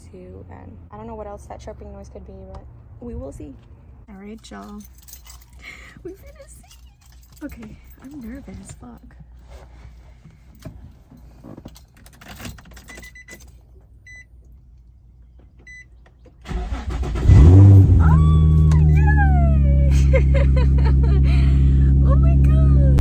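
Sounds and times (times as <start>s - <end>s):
car engine cranking and starting: 15.6s - 23.0s.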